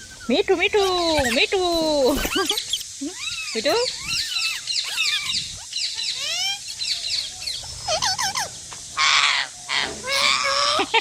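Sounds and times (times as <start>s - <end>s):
parrot chirping: 2.1s - 10.8s
parrot squawking: 2.2s - 10.8s.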